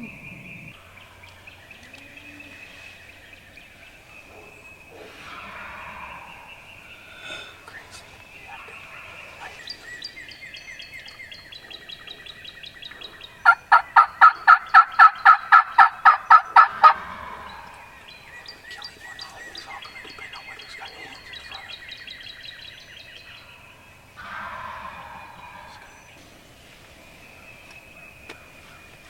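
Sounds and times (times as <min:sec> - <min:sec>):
soft rapid bird calls: 0:00.0 - 0:00.8, 0:13.0 - 0:22.4
turkey yelping: 0:00.0 - 0:00.8, 0:13.4 - 0:17.7.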